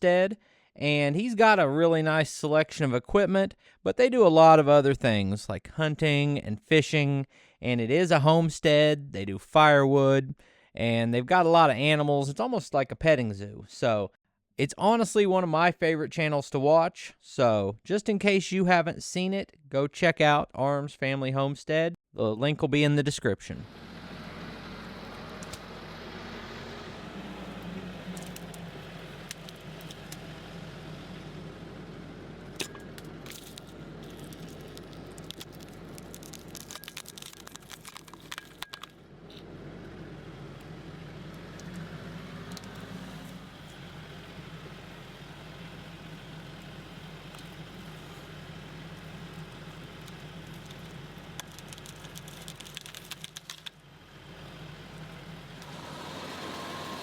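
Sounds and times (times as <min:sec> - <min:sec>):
tractor engine running: 0:23.6 - 0:57.0
sharp crackles and snaps: 0:27.6 - 0:30.3, 0:33.0 - 0:39.0, 0:49.0 - 0:53.8.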